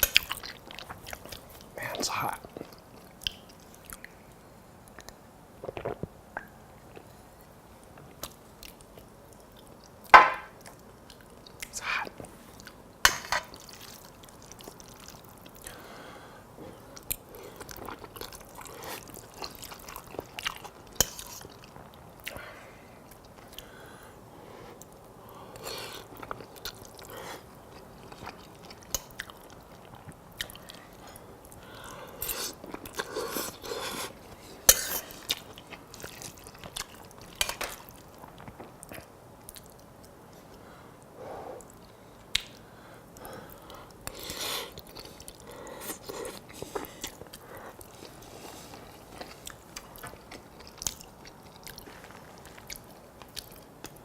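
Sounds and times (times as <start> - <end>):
chewing and wet mouth sounds: 0.0 - 24.0, 24.6 - 54.0.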